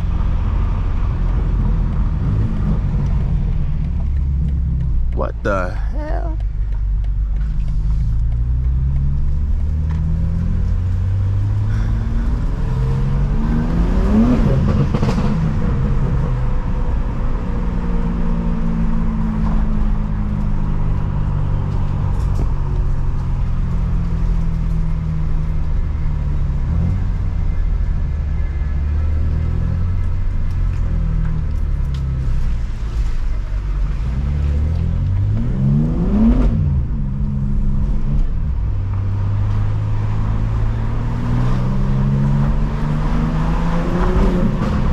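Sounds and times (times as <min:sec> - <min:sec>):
car engine revving: 0:00.0 - 0:44.9.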